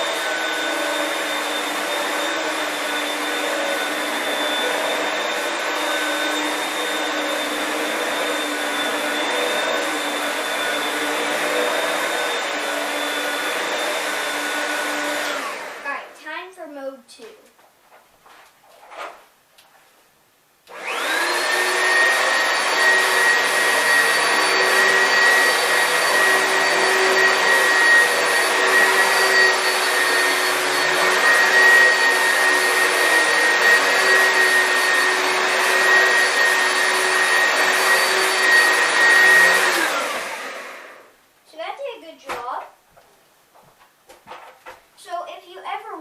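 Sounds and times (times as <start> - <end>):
vacuum cleaner running on carpet: 0.0 - 15.9, 20.7 - 41.2.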